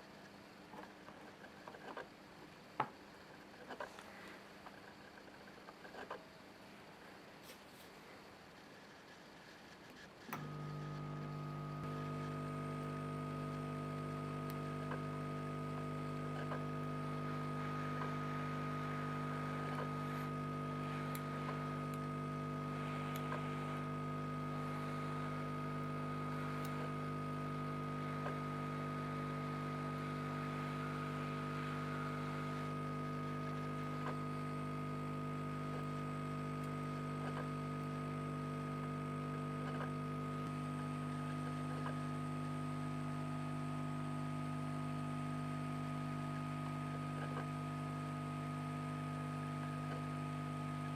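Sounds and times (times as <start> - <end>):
steady electric hum: 0.0 - 50.9.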